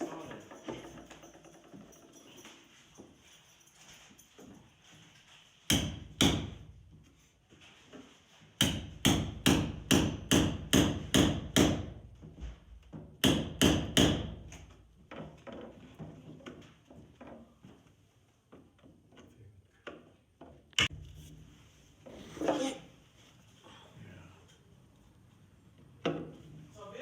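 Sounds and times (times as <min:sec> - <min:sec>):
hammer striking wooden shelving: 0:05.7 - 0:06.7, 0:08.6 - 0:12.2, 0:12.9 - 0:14.7.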